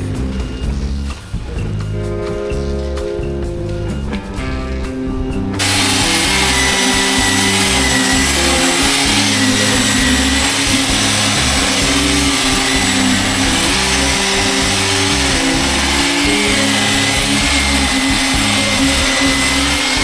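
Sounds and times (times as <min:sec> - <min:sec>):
background music with beat: 0:00.0 - 0:20.0
loud machine noise: 0:04.4 - 0:20.0.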